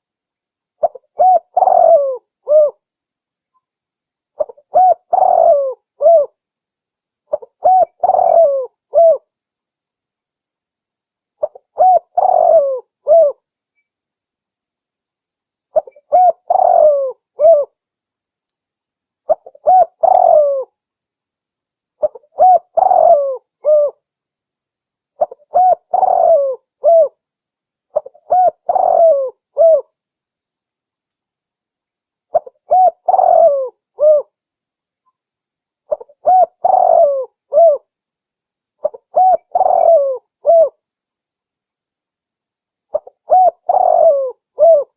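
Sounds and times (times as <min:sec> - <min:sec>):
dove cooing: 0:00.8 - 0:02.8, 0:04.4 - 0:06.4, 0:07.3 - 0:09.3, 0:11.4 - 0:13.4, 0:15.8 - 0:17.8, 0:19.3 - 0:20.7, 0:22.0 - 0:24.0, 0:25.2 - 0:27.2, 0:27.9 - 0:29.9, 0:32.3 - 0:34.3, 0:35.9 - 0:37.9, 0:38.8 - 0:40.8, 0:42.9 - 0:44.9.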